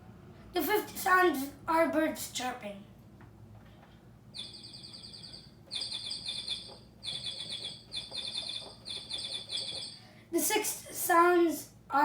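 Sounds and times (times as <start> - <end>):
electronic bird chirp effect: 4.4 - 10.0.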